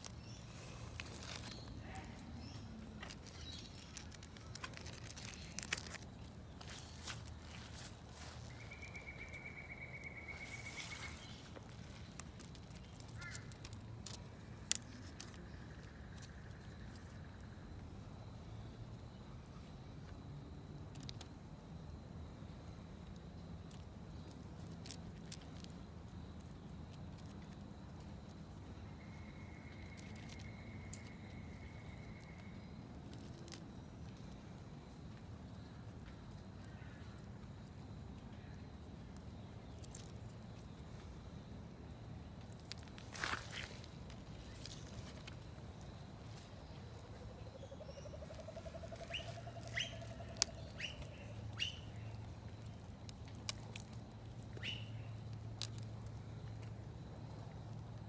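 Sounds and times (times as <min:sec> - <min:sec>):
succulent leaves snapping: 0:00.0 - 0:09.4, 0:42.6 - 0:45.5, 0:49.0 - 0:51.8
birds chirping: 0:46.8 - 0:52.3, 0:54.6 - 0:55.2.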